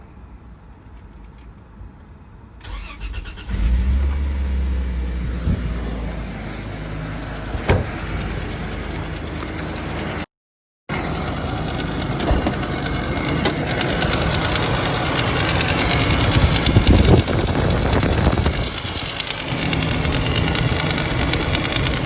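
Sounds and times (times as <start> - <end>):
car engine starting and running: 2.6 - 10.3, 10.9 - 22.0
engine rattle: 2.6 - 10.3, 10.9 - 22.0.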